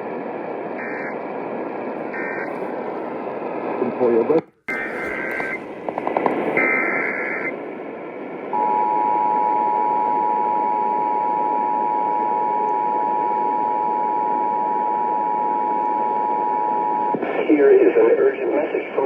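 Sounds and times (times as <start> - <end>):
radio hiss: 0.0 - 8.6, 17.1 - 19.0
screeching data bursts: 0.8 - 1.2, 2.1 - 2.5, 4.7 - 5.6, 6.6 - 7.5.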